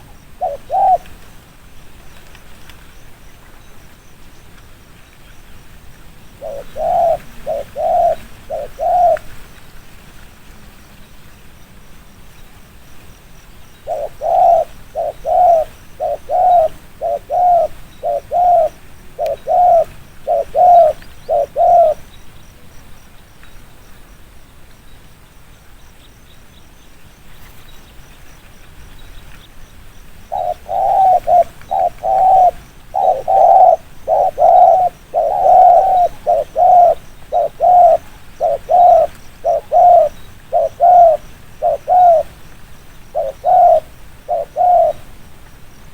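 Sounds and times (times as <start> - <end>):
dove cooing: 0.0 - 1.2, 6.4 - 9.3, 13.8 - 22.0, 30.2 - 42.4, 43.0 - 45.2.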